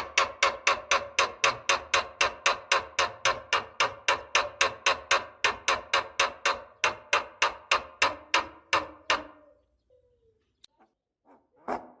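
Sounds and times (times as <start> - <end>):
rapid sharp knocking strikes: 0.0 - 9.3.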